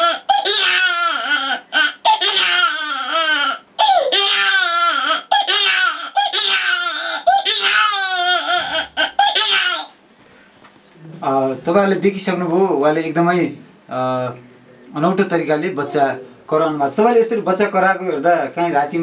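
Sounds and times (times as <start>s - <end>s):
boy imitating crying baby: 0.0s - 10.0s.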